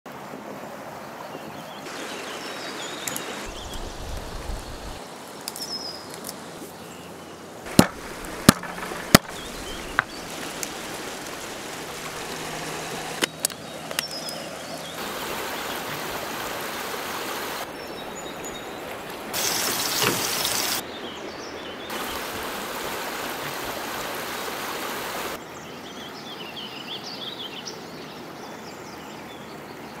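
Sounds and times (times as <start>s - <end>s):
birds chirping: 1.5s - 5.0s, 6.7s - 22.3s
sharp knocks: 7.7s - 10.1s
steady hiss: 19.4s - 20.8s.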